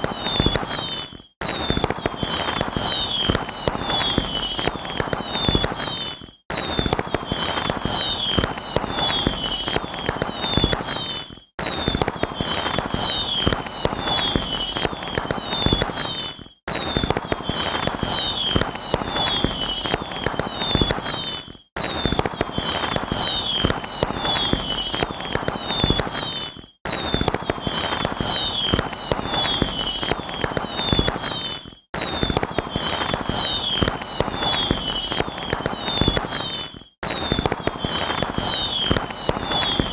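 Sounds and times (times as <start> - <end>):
fireworks crackling and popping: 0.0 - 39.9
fireworks whistling chirps: 0.0 - 39.9.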